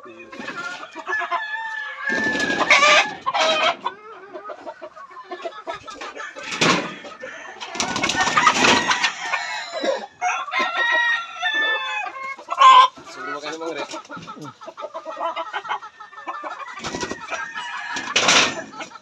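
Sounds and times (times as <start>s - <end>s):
chickens clucking: 0.0s - 19.0s
rooster crowing: 1.0s - 3.8s, 6.4s - 12.2s, 16.6s - 18.8s.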